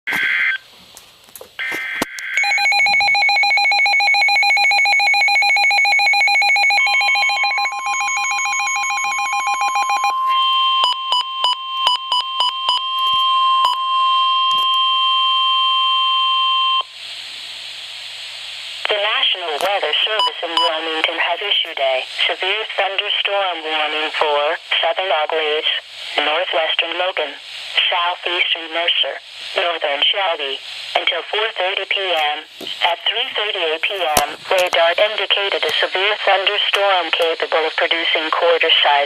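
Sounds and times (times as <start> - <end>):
steady warning tone: 1.6 - 16.9
pulsing electronic alarm beep: 2.4 - 16.9.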